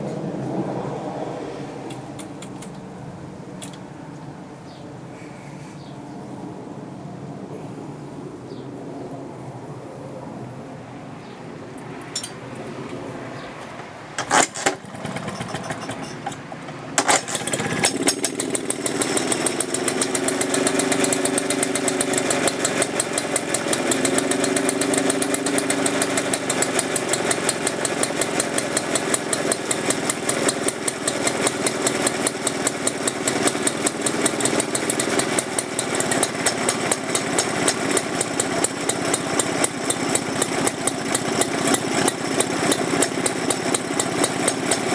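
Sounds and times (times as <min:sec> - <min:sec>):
lawnmower engine starting and running: 0:01.8 - 0:02.9, 0:13.7 - 0:44.9.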